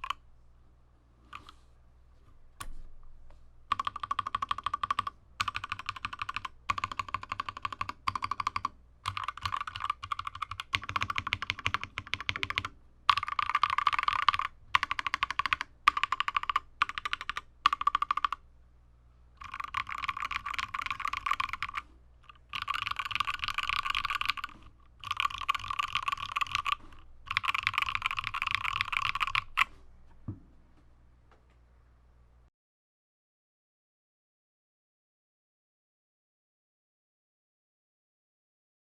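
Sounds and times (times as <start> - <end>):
mechanical keyboard typing: 3.7 - 18.4, 19.4 - 29.7.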